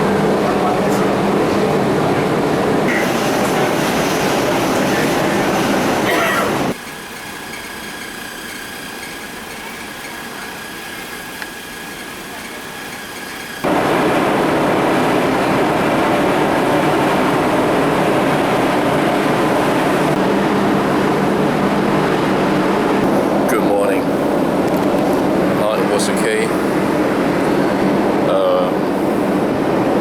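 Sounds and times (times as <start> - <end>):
rushing travel noise: 0.0 - 6.8, 13.6 - 30.0
engine hum with faint whine: 13.6 - 30.0.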